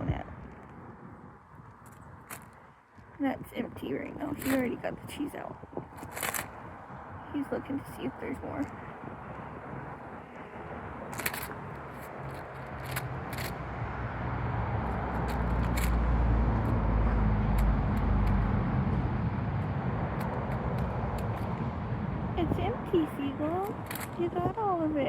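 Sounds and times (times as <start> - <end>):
vehicle engine rumble passing: 5.4 - 25.0.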